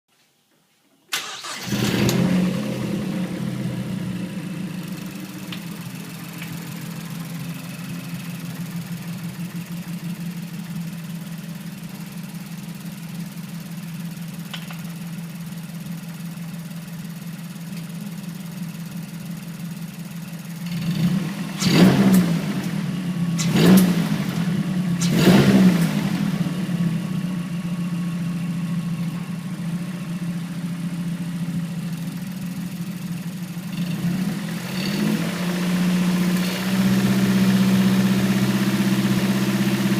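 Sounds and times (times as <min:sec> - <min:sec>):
car engine starting and idling: 0:01.1 - 0:39.9
engine revving with rattle: 0:01.4 - 0:05.7, 0:20.6 - 0:27.3, 0:33.7 - 0:39.9.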